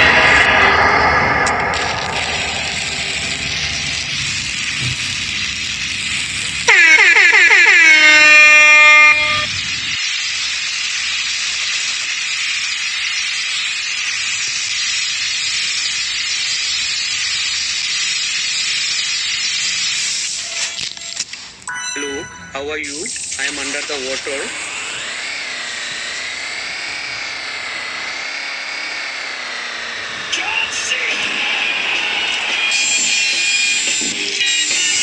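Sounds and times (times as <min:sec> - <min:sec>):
air horn blast: 0:00.0 - 0:10.0
steady hiss: 0:00.0 - 0:10.0.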